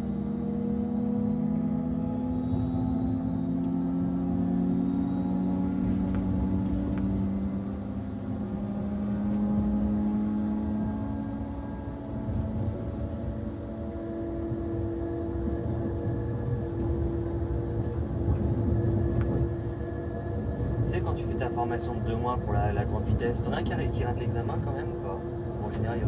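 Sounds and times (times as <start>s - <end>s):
humming tones: 0.0s - 26.0s
train cab low rumble: 5.7s - 26.0s.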